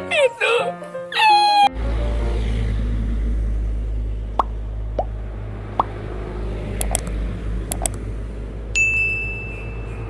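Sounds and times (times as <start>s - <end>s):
sharp high clicks: 6.8s - 7.1s, 7.7s - 8.0s.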